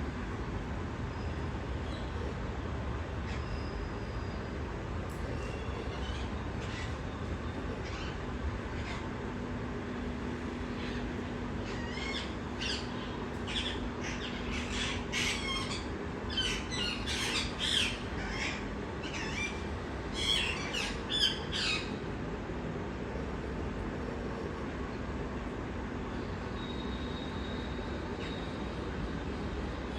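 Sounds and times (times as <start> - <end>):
parrots squawking: 8.8 - 9.1, 11.6 - 22.0.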